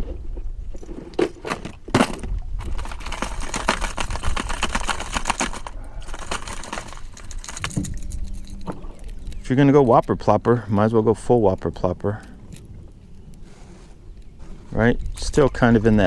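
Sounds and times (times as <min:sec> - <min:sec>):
plastic lures clicking and clattering: 0:02.0 - 0:10.4.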